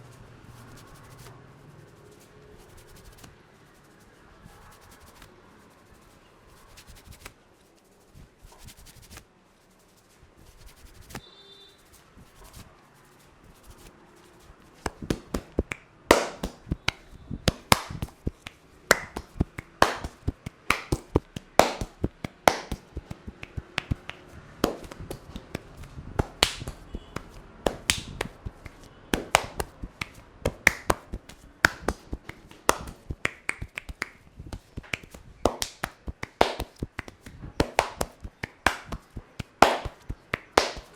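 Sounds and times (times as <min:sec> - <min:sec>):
hands slapping on a head: 0:00.6 - 0:01.3, 0:02.7 - 0:03.3, 0:04.8 - 0:05.3, 0:06.6 - 0:07.4, 0:08.5 - 0:09.3, 0:10.6 - 0:11.2, 0:13.6 - 0:13.9, 0:14.7 - 0:40.9.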